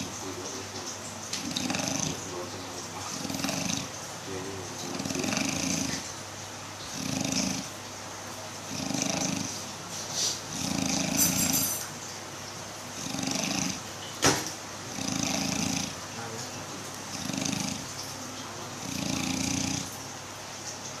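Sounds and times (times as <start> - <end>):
person snoring: 1.4 - 2.2, 3.1 - 3.9, 4.8 - 6.0, 7.0 - 7.7, 8.7 - 9.6, 10.5 - 11.6, 13.0 - 13.8, 14.9 - 16.0, 17.1 - 17.8, 18.8 - 19.9.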